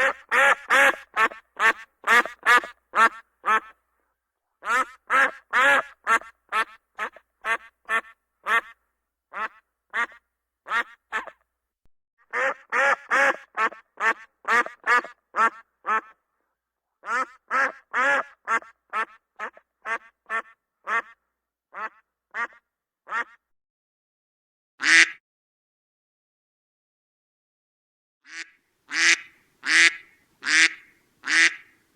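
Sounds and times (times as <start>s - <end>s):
duck quacking: 0.0s - 3.8s, 4.6s - 11.4s, 12.3s - 16.2s, 17.0s - 23.4s, 24.8s - 25.2s, 28.3s - 31.8s.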